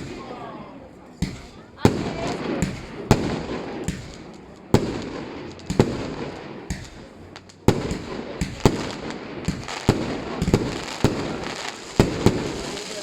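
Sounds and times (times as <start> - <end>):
fireworks bangs: 0.0 - 13.0
fireworks crackling: 0.0 - 13.0.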